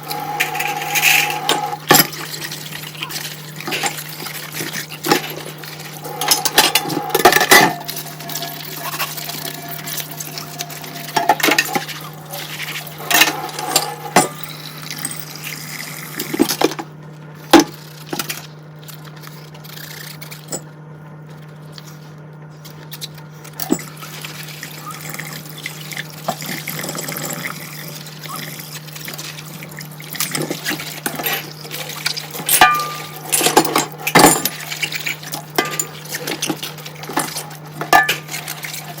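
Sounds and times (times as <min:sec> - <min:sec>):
tap water running and splashing: 0:00.0 - 0:16.8, 0:23.6 - 0:39.0
low hum: 0:00.0 - 0:39.0
dishes clinking: 0:00.1 - 0:15.6, 0:30.3 - 0:39.0.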